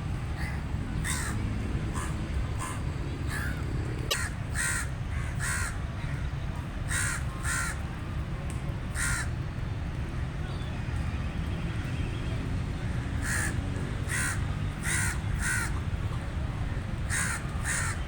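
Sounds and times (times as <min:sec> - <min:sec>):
crow cawing: 0:00.4 - 0:01.4, 0:02.0 - 0:05.8, 0:06.9 - 0:07.8, 0:09.0 - 0:09.3, 0:13.2 - 0:15.7, 0:17.1 - 0:18.0.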